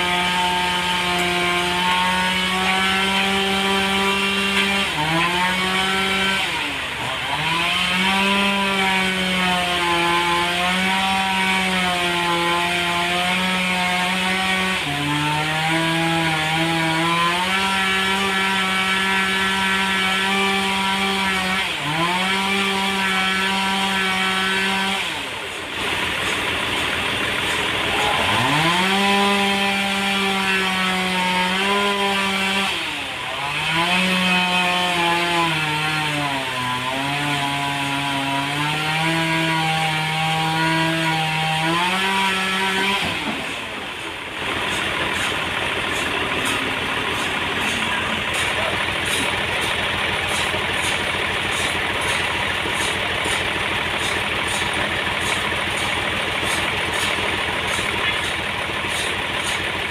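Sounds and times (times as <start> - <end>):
sawmill saw cutting log: 0.0 - 59.9
noisy machine sound: 24.2 - 30.2, 42.8 - 59.9.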